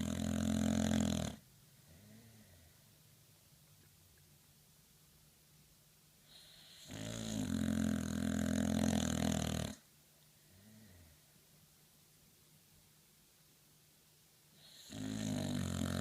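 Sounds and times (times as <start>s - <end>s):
dog snoring: 0.0s - 2.7s, 6.2s - 9.9s, 14.6s - 16.0s
faint breathing: 1.7s - 3.0s, 6.2s - 6.9s.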